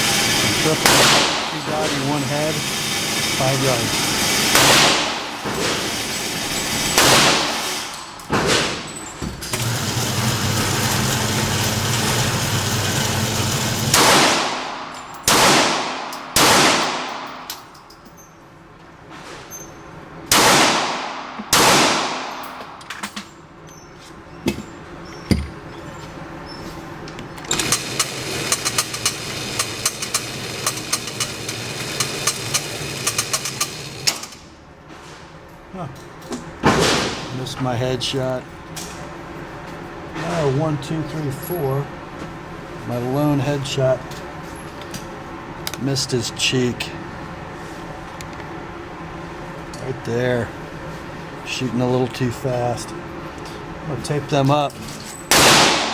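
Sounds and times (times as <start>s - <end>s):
low steady hum: 0.0s - 9.6s
pistol shots with echo: 0.7s - 2.0s, 4.5s - 5.9s, 6.9s - 7.9s, 13.9s - 17.5s, 20.3s - 22.7s, 55.3s - 55.9s.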